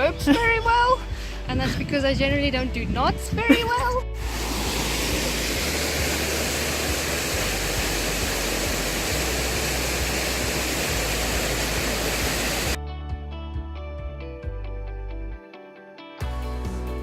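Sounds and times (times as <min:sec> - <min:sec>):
stream rushing over rocks: 0:04.2 - 0:12.8.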